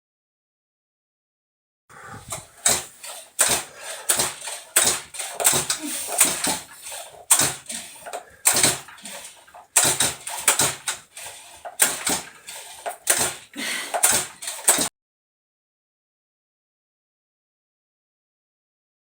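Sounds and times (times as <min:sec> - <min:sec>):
engine turning over: 0:02.2 - 0:14.9
chainsaw starter cord pulls: 0:02.3 - 0:14.9.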